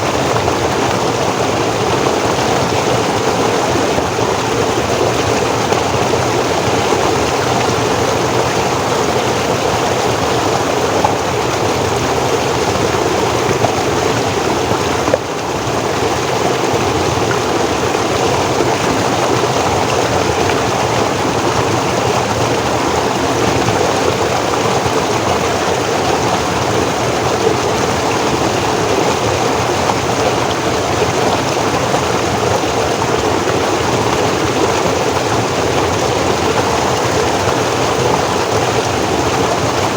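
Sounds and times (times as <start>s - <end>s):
forest stream flowing: 0.0s - 39.9s.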